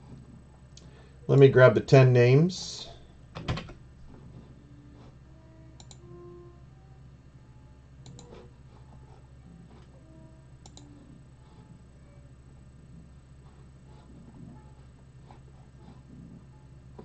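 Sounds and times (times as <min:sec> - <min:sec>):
steady low hum: 0:00.0 - 0:17.0
computer mouse clicking: 0:05.8 - 0:06.0, 0:08.0 - 0:08.5, 0:10.6 - 0:11.0.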